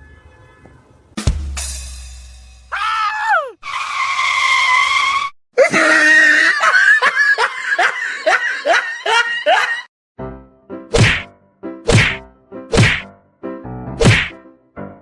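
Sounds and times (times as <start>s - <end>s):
shrill voice screaming: 2.7s - 5.3s.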